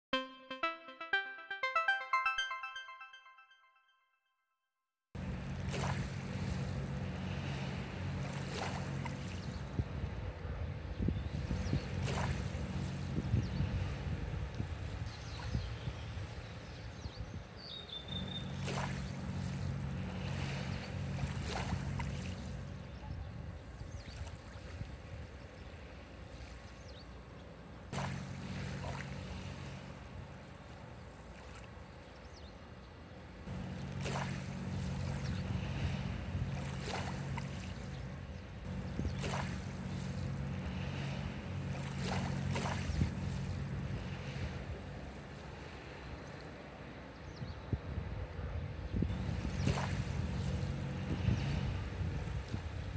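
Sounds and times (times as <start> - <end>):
small waves washing onto beach: 5.2 - 10.0, 11.5 - 16.2, 18.2 - 32.3, 33.5 - 46.6, 49.1 - 52.9
wind rumbling on microphone: 8.2 - 17.6, 34.9 - 40.9, 41.6 - 45.0, 47.4 - 52.9
short splashes or clicks: 28.0 - 29.3, 33.6 - 35.4, 36.5 - 38.0, 38.9 - 40.7, 41.7 - 43.8.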